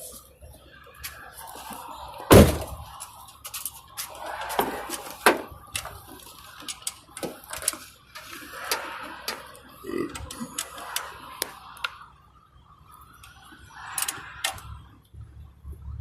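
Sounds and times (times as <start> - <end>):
heavy thud: 2.3 - 2.8
knocks and clanks on truck: 2.3 - 3.0, 4.5 - 5.9.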